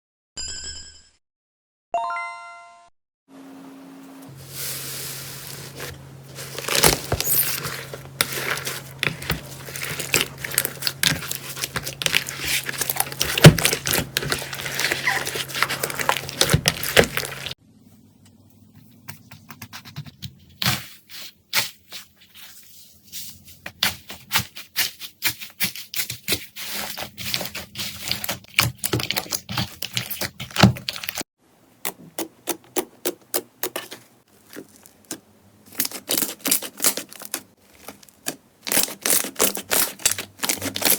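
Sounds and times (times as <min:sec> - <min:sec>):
slime crackling and popping: 0:06.6 - 0:17.6, 0:33.7 - 0:40.9.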